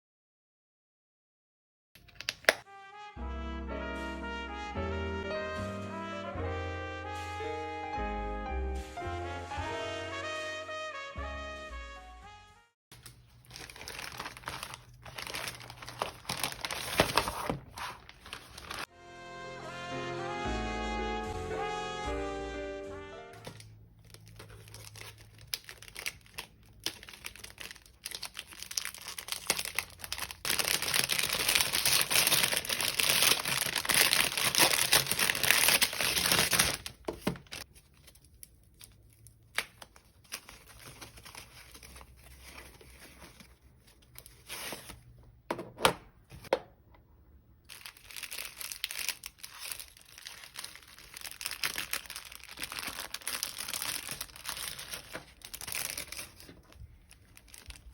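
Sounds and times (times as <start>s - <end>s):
packaging crinkling and rustling: 12.9s - 18.9s, 23.4s - 45.2s, 47.7s - 57.9s
packaging tearing: 13.0s - 18.9s, 23.4s - 45.1s, 47.7s - 57.9s.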